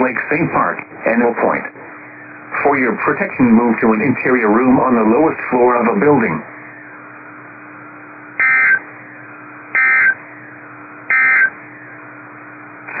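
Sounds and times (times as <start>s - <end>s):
radio hiss: 0.0s - 7.3s, 8.4s - 13.0s
faint steady hum: 0.0s - 13.0s
shrill data tone bursts: 8.4s - 8.9s, 9.7s - 10.3s, 11.1s - 11.6s.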